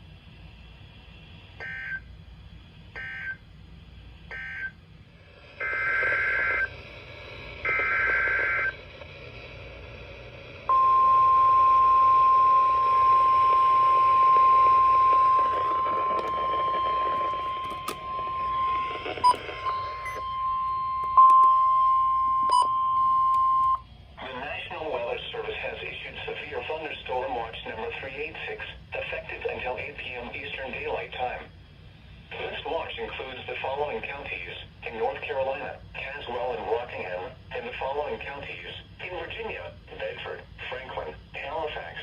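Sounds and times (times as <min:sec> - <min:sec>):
steady warning alarm tone: 0:01.6 - 0:02.2, 0:02.9 - 0:03.4, 0:04.3 - 0:04.8, 0:05.5 - 0:08.9, 0:10.6 - 0:23.9
faint radio static: 0:05.2 - 0:21.2, 0:24.2 - 0:31.6, 0:32.2 - 0:42.0
warbling data bursts: 0:11.2 - 0:22.9.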